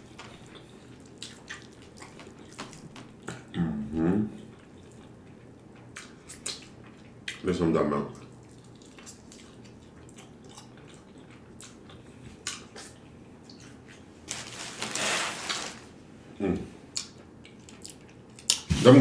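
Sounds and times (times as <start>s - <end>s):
utensil scraping container: 14.3s - 15.9s.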